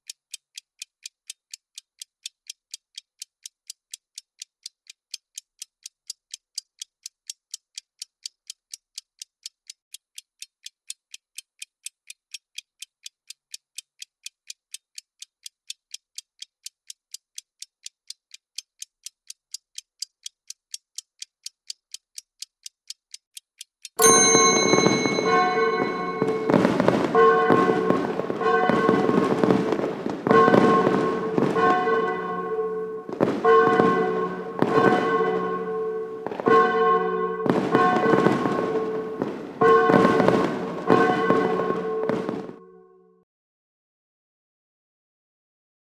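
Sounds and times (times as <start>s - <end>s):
clock ticking: 0.0s - 42.6s
festive music: 24.0s - 42.6s
fireworks bangs and crackling: 24.5s - 35.6s, 36.2s - 36.8s, 37.4s - 42.6s.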